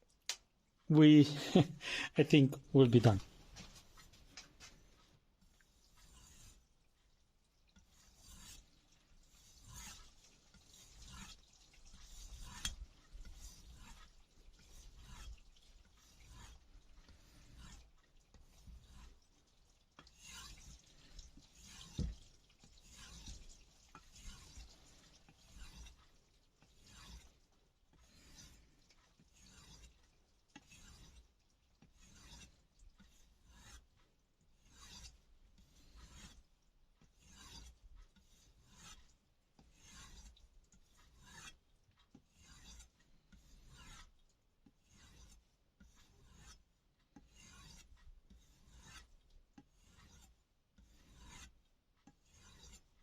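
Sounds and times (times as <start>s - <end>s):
knife rubbing on a strop: 2.9s - 6.7s, 7.8s - 19.2s, 20.1s - 27.4s, 28.0s - 30.0s, 30.6s - 31.3s, 31.9s - 34.0s, 34.6s - 36.4s, 37.2s - 41.6s, 42.2s - 44.1s, 44.7s - 46.6s, 47.2s - 49.1s, 49.7s - 51.5s, 52.2s - 52.9s.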